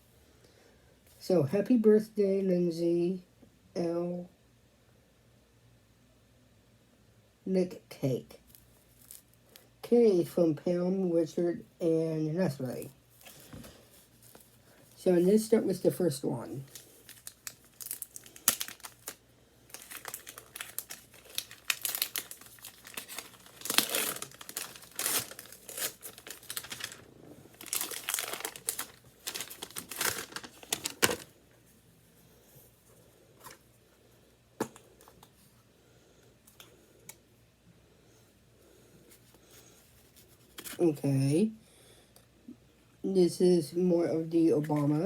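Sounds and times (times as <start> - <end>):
gift packaging crinkling and tearing: 8.5 - 9.6, 12.7 - 31.4.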